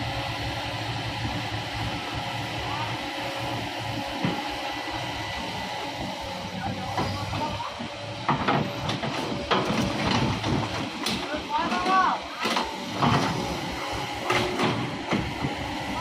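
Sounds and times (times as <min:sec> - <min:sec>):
diesel machinery droning: 0:00.0 - 0:16.0
sharp knocks and clatters: 0:08.2 - 0:13.4.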